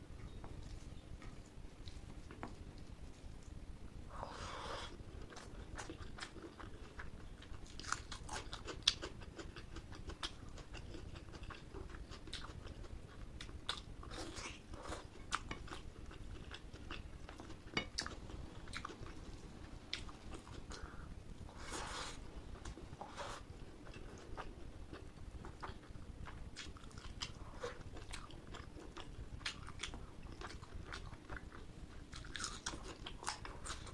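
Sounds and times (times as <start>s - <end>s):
wet chewing and smacking: 23.8s - 33.9s.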